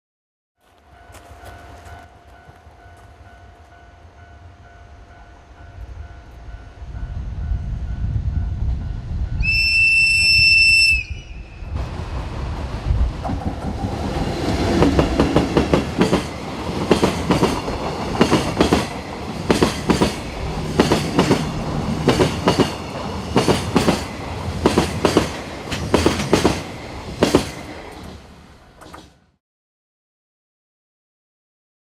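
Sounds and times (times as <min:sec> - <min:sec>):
train rumbling: 0:00.6 - 0:29.4
locomotive horn: 0:09.4 - 0:11.4
train wheels clickety-clack: 0:12.0 - 0:29.2.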